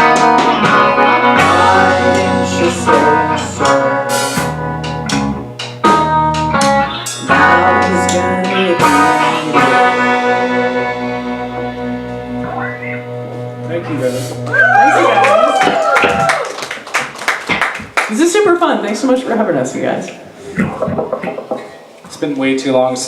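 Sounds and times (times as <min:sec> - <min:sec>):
drum kit and cymbal hits: 0:00.0 - 0:12.5, 0:13.4 - 0:14.6
live band playing: 0:00.0 - 0:16.2.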